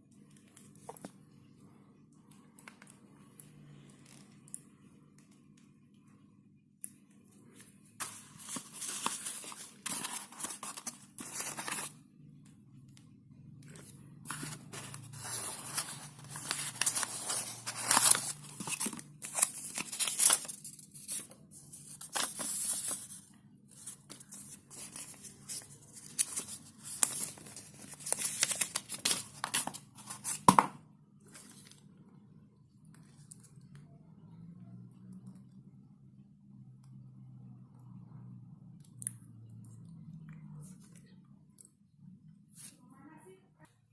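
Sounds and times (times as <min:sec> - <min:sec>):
packaging tearing and rustling: 0:08.0 - 0:11.9, 0:13.8 - 0:23.2, 0:23.8 - 0:30.6.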